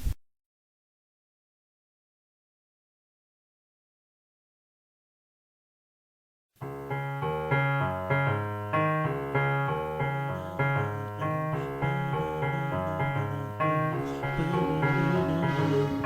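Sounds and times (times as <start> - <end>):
piano chords over bass line: 6.6 - 16.0.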